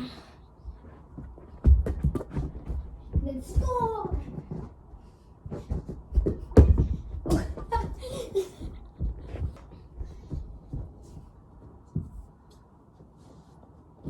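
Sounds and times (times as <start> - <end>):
ball thumping: 5.5 - 8.0.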